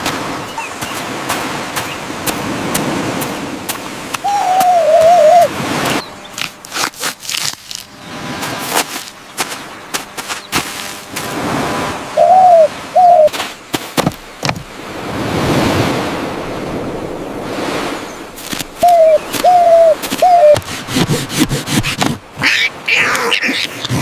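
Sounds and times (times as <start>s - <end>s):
surf washing: 0.0s - 24.0s
low cooing bird calls: 0.4s - 1.0s, 4.2s - 6.3s, 12.1s - 13.3s, 18.8s - 20.7s.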